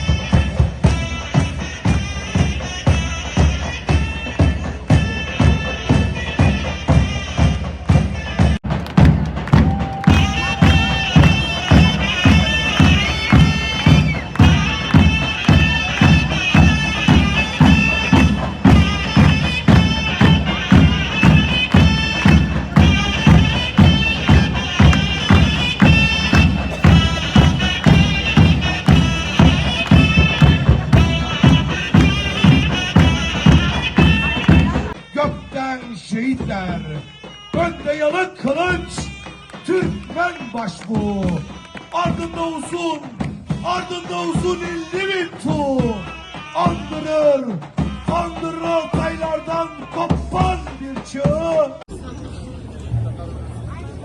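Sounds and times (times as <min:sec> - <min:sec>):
heavy drum beat: 0:08.4 - 0:35.0
shrill reedy pipe melody: 0:08.8 - 0:35.0.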